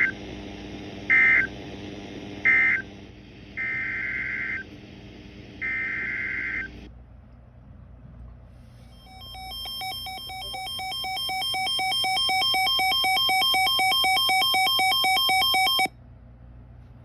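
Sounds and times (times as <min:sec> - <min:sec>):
warbling electronic alert tone: 0:09.0 - 0:15.9.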